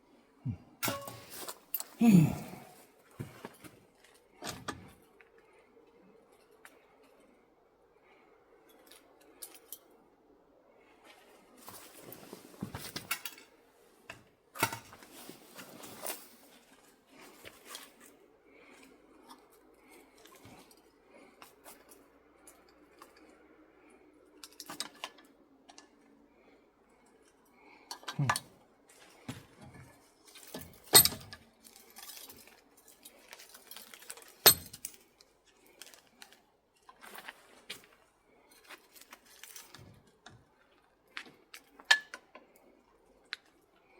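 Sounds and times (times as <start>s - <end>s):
metal clinking and scraping: 0.8s - 2.0s.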